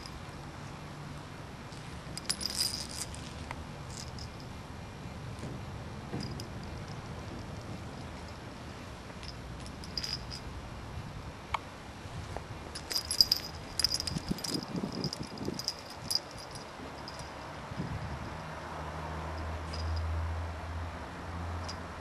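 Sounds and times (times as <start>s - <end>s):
light jingling and clicking: 1.7s - 4.6s, 6.1s - 10.5s, 12.7s - 18.7s, 19.3s - 20.2s, 21.6s - 22.0s.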